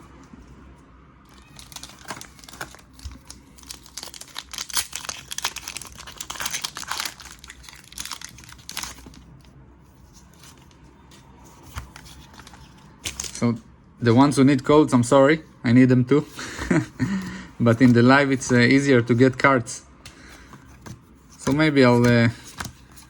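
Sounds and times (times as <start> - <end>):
foil wrapper crinkling and tearing: 1.3 - 9.3.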